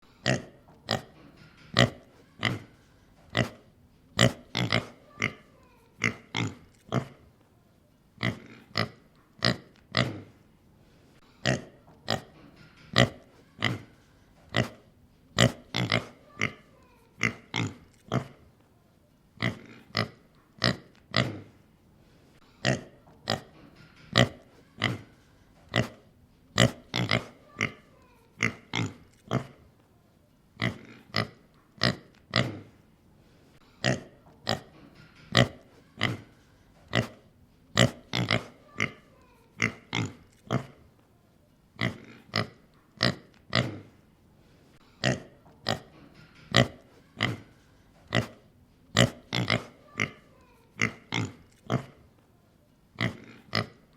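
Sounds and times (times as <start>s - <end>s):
pig grunting: 4.2s - 7.2s, 8.2s - 10.4s, 15.4s - 18.4s, 19.4s - 21.6s, 26.6s - 29.6s, 30.6s - 32.8s, 37.8s - 40.8s, 41.8s - 44.0s, 45.0s - 52.0s, 53.0s - 53.8s.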